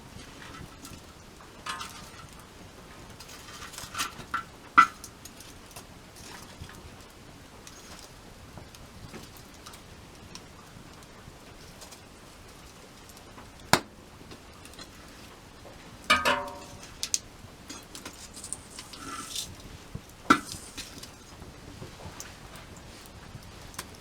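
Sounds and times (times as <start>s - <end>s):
campfire crackling: 7.0s - 24.0s
metallic knocks and clinks: 16.1s - 17.0s.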